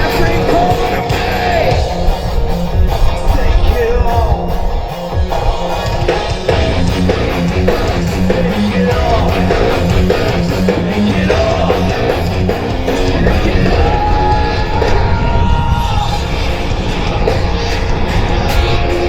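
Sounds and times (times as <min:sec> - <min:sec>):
electric guitar: 0:00.0 - 0:19.0
rock band playing live: 0:00.0 - 0:19.0.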